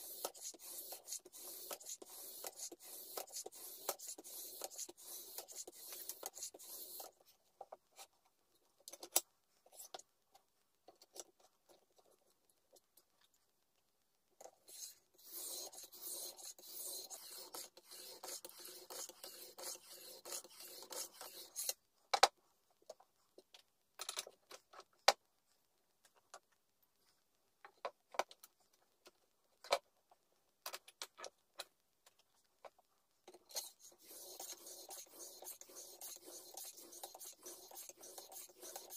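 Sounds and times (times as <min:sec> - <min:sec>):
knife scraping on whetstone: 0:15.3 - 0:21.7.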